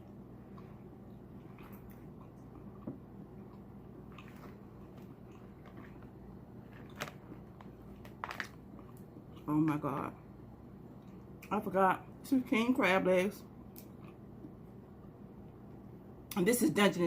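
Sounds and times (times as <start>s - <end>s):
chewing and mouth smacking: 0.0s - 9.5s, 13.7s - 14.6s.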